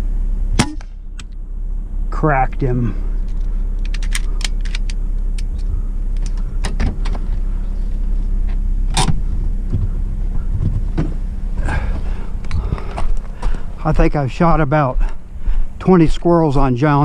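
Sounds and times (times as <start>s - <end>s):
vehicle engine idling: 0.0s - 17.0s.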